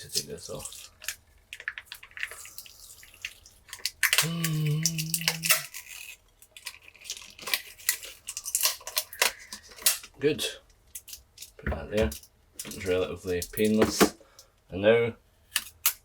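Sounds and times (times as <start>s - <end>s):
person humming: 4.2s - 5.7s.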